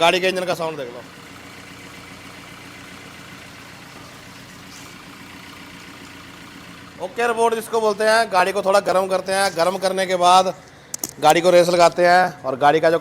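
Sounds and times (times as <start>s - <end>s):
car engine idling: 0.0s - 12.8s.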